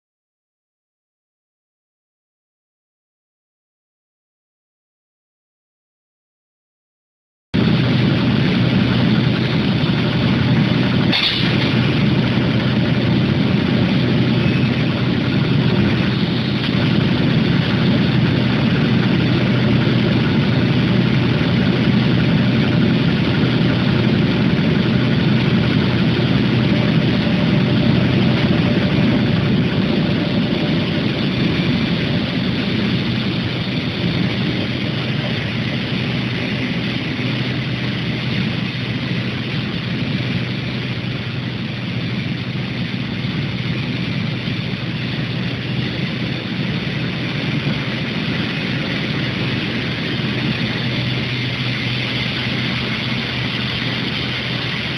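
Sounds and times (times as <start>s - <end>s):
low machine hum: 7.6s - 54.9s
sharp clack: 11.1s - 11.9s.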